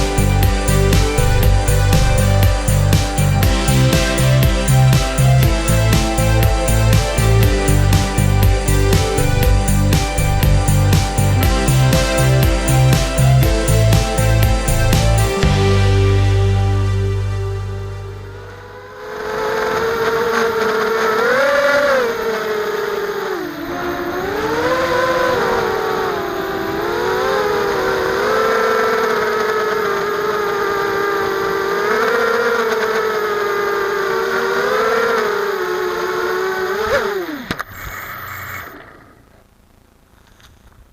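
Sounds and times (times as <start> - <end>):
quadcopter motors whining: 0.0 - 15.6, 18.5 - 39.3.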